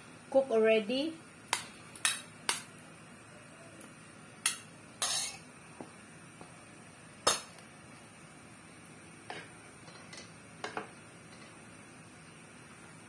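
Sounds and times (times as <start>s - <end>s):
utensil scraping a pan: 5.0s - 5.4s.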